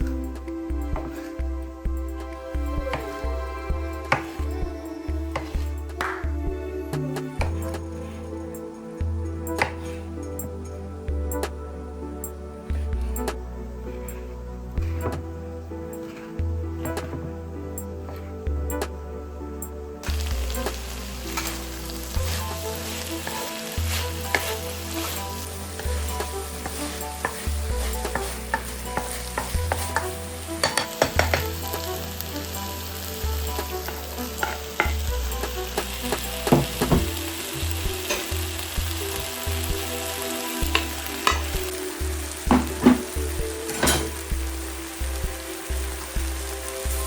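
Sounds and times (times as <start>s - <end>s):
food sizzling in frying pan: 20.0s - 47.0s
utensil scraping pan: 26.1s - 31.5s.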